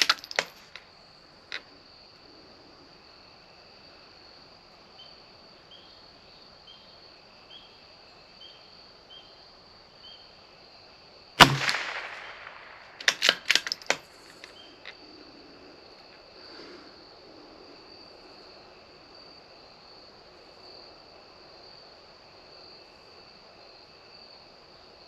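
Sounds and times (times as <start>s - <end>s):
rifle bolt metallic clicks: 0.0s - 0.8s, 11.4s - 14.6s
rifle shot: 11.4s - 14.5s.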